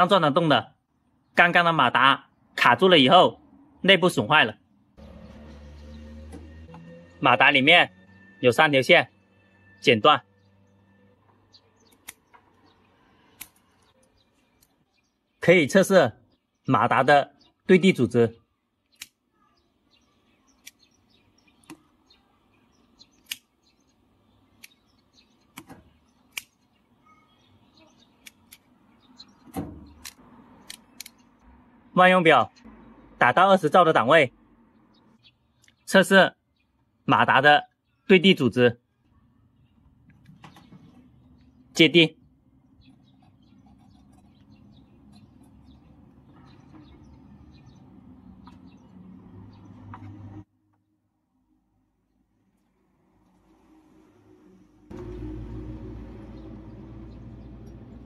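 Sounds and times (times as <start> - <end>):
small birds chirping: 7.8 - 50.5, 55.9 - 58.0.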